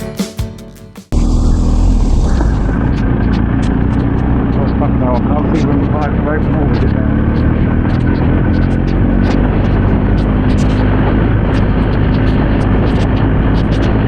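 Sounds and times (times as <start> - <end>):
motorcycle engine running: 1.1 - 14.0
wind rush: 1.2 - 4.7
sharp ticks: 1.2 - 14.0.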